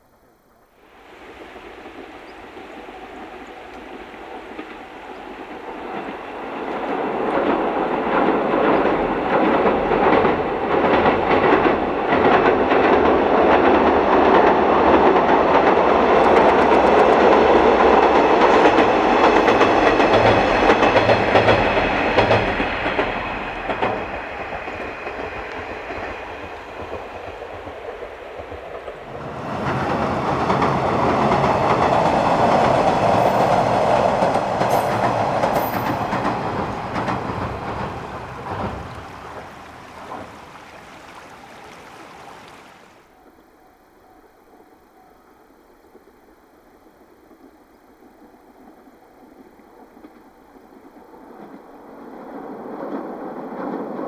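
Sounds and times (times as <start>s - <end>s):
train wheels clattering over rail joints: 3.4s - 42.9s.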